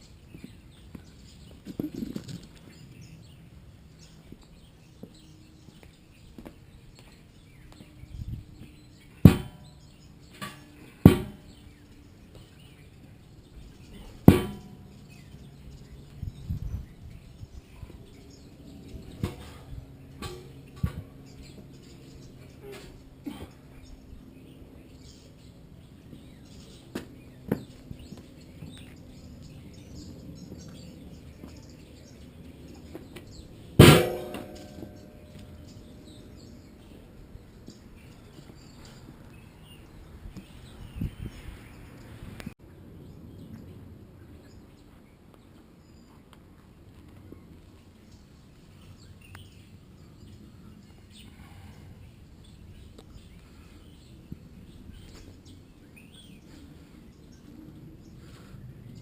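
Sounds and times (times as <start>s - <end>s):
sharp ringing knocks: 9.2s - 11.6s, 14.2s - 14.9s, 33.8s - 36.3s
loud ringing bang: 33.8s - 36.2s.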